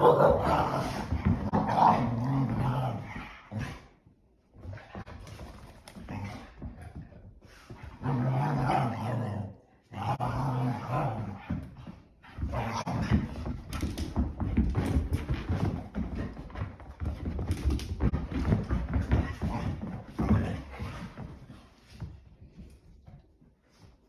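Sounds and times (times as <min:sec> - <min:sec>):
dogs scuffling: 0:10.9 - 0:24.0.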